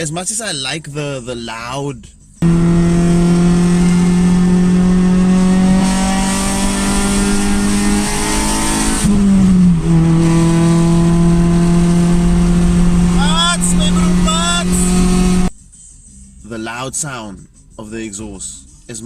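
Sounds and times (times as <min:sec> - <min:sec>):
loud car exhaust droning: 0:02.4 - 0:15.5.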